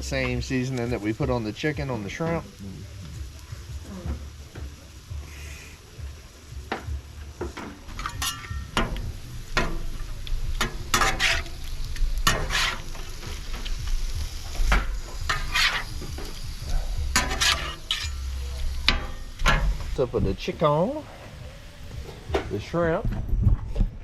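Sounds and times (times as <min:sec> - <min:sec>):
food sizzling on a griddle: 0:00.0 - 0:23.0
metal spatulas scraping and clinking: 0:07.9 - 0:09.0, 0:10.6 - 0:11.6, 0:12.2 - 0:12.9, 0:14.7 - 0:16.0, 0:17.1 - 0:19.7.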